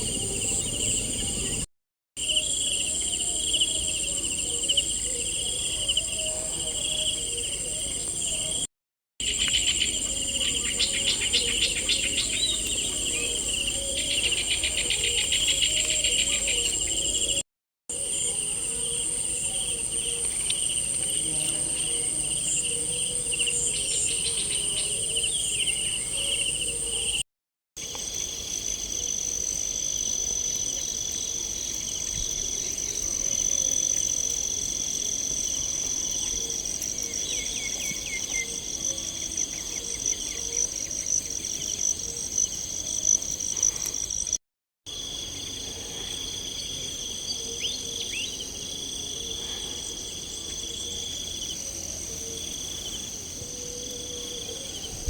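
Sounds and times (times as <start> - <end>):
crickets and insects trilling: 0.0 - 27.2, 27.8 - 55.0.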